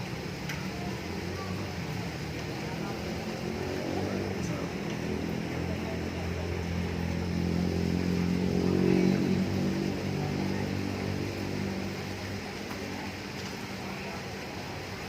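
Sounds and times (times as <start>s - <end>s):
vehicle engine passing by: 2.6s - 13.4s.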